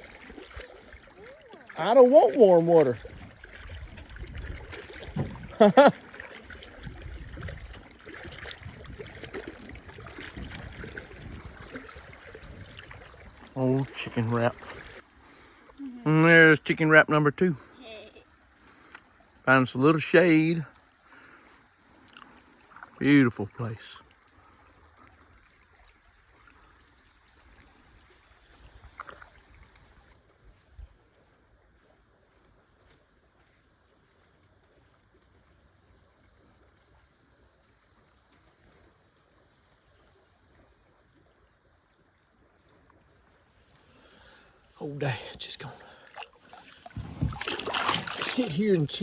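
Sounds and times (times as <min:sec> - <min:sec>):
creek water trickling: 0:00.0 - 0:49.0
faint ticks and drips: 0:06.2 - 0:15.9, 0:18.4 - 0:44.8.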